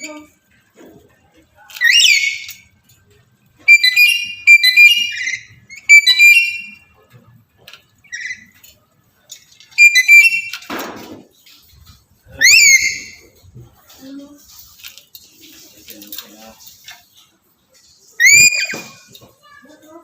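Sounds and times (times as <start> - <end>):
lory shrill calls: 1.8 - 2.6, 3.7 - 6.8, 9.8 - 10.6, 12.4 - 13.2, 18.2 - 19.2.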